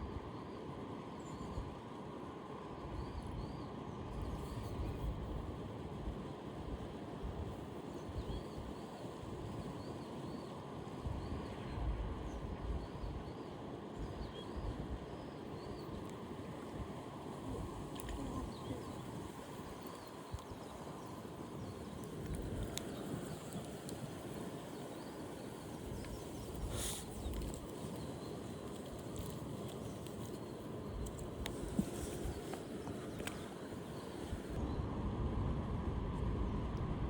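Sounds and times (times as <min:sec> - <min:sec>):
wind buffeting microphone: 0:14.0 - 0:37.0
light clicks: 0:26.0 - 0:33.6.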